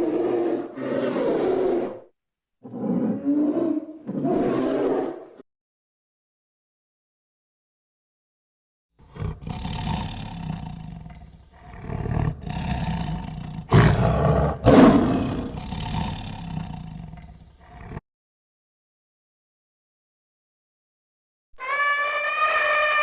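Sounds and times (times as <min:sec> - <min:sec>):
big cat roaring: 0:00.0 - 0:05.4, 0:09.0 - 0:18.0.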